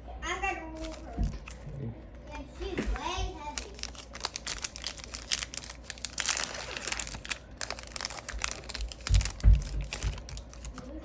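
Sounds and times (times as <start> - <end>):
material crinkling and rustling: 2.8 - 11.0
dull thumps: 9.0 - 10.4.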